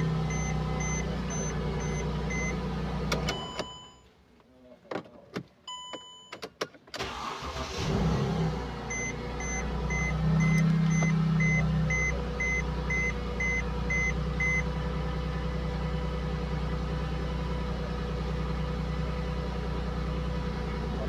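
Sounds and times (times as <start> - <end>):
car engine cranking and idling: 0.0 - 4.0, 6.4 - 21.0
dashboard warning chime beeping: 0.0 - 4.1, 5.7 - 6.5, 8.9 - 14.7.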